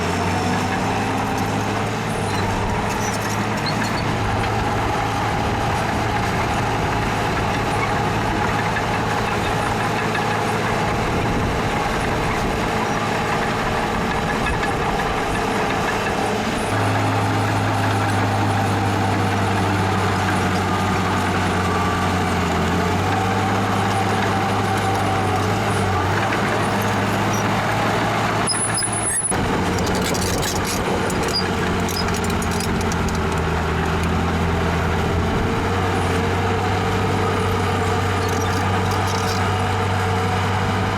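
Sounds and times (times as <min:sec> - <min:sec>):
heavy diesel machinery engine: 0:00.0 - 0:40.9
faint metallic clinks: 0:38.2 - 0:39.5.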